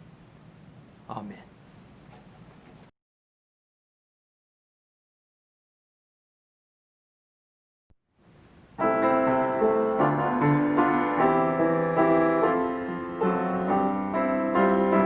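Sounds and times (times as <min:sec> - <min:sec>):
slow piano piece: 0:08.6 - 0:15.0.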